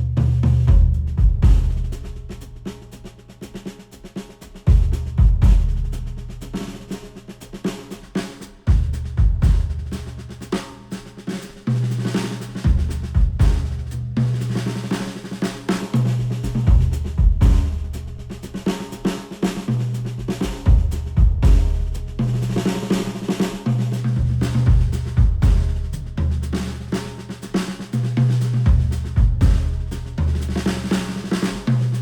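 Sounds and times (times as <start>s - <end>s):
bass line: 0.0s - 2.0s, 20.7s - 22.6s, 28.7s - 30.7s
drum kit: 0.0s - 32.0s.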